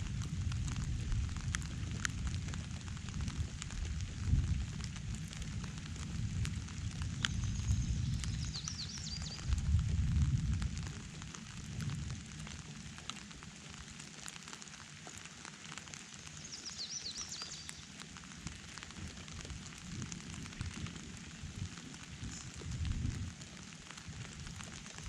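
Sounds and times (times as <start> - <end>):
low rumble of thunder: 0.0 - 13.0, 18.9 - 25.0
steady rain: 0.0 - 25.0
bird chirping: 7.3 - 9.5, 16.4 - 17.9.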